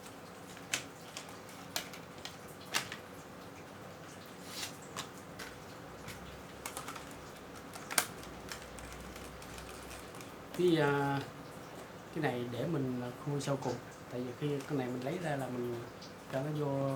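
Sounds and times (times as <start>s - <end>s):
packaging clicks and taps: 0.5s - 3.0s, 5.0s - 10.7s.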